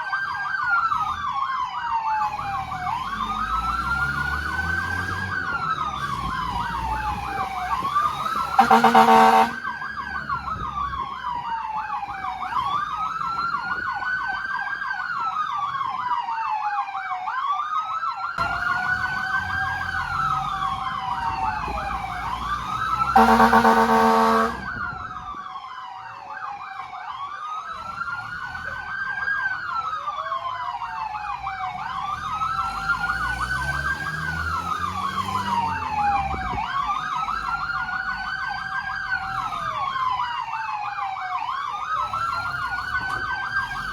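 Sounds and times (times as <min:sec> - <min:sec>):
emergency sirens wailing: 0:00.0 - 0:43.9
loud horn blasts: 0:08.5 - 0:09.6, 0:23.2 - 0:24.7
engine rumbling: 0:18.4 - 0:24.8.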